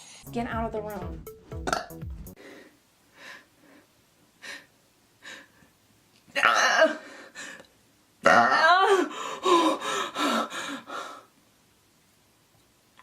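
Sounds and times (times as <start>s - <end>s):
faint breaths: 2.4s - 5.8s.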